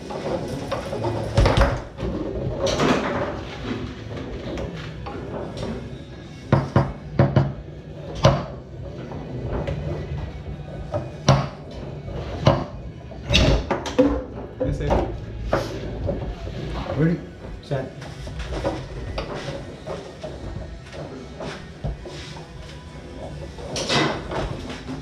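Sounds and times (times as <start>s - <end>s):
foosball ball knocks: 11.0s - 11.7s.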